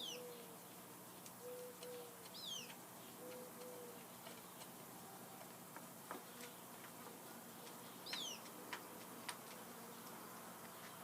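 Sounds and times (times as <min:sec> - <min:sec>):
high falling bird chirp: 0:00.0 - 0:05.3, 0:06.2 - 0:08.6.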